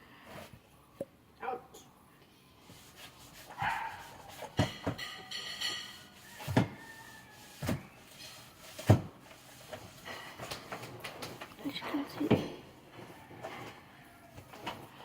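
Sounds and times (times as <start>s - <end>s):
objects knocking and thumping: 3.5s - 15.0s.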